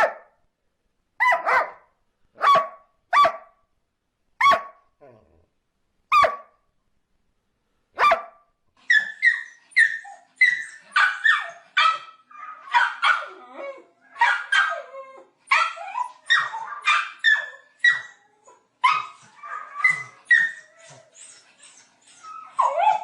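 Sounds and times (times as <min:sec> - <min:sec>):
dog barking and yapping: 0:00.0 - 0:00.3, 0:01.2 - 0:03.5, 0:04.4 - 0:04.8, 0:06.1 - 0:06.5, 0:08.0 - 0:13.4, 0:14.1 - 0:18.2, 0:18.8 - 0:21.2, 0:22.4 - 0:23.0.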